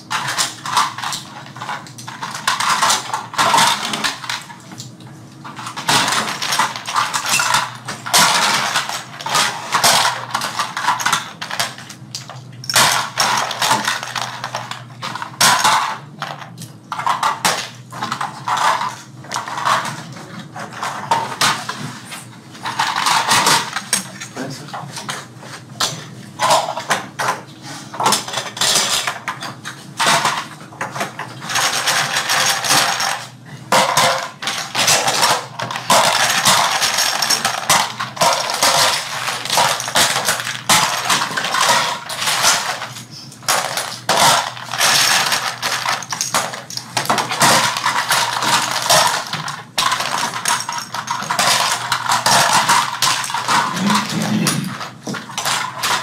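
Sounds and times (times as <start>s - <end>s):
plastic parts clicking and clattering: 0.0s - 56.0s.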